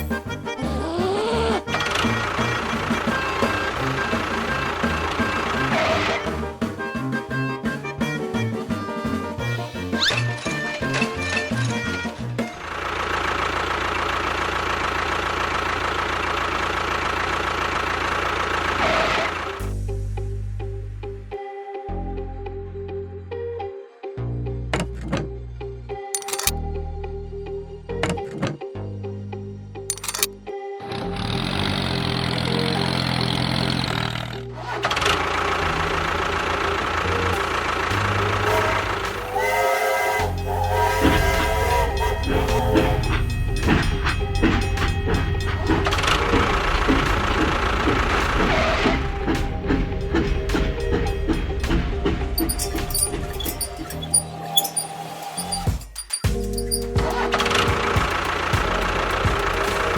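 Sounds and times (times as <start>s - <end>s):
motor running with rapid rattle: 10.0s - 19.6s, 30.9s - 39.4s, 40.4s - 59.9s.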